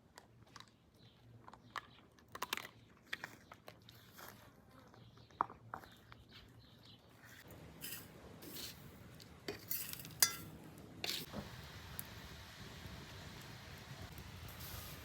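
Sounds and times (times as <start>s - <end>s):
cutlery and dishes clinking: 7.8s - 8.8s, 9.5s - 11.3s.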